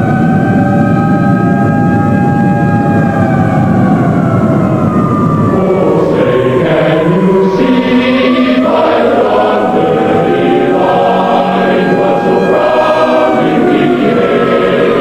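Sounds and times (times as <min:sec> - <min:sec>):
choir singing long notes: 0:05.4 - 0:15.0.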